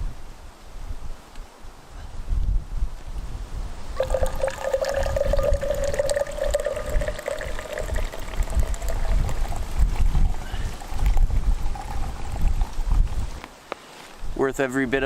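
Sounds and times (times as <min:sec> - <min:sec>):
low wind rumble: 0:00.0 - 0:13.5
liquid pouring into a mug: 0:04.0 - 0:13.3.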